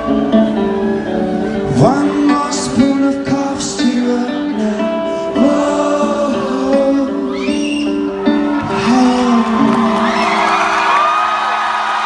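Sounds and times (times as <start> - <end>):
live rock band playing: 0.0 - 11.6
male vocals singing: 1.7 - 10.7.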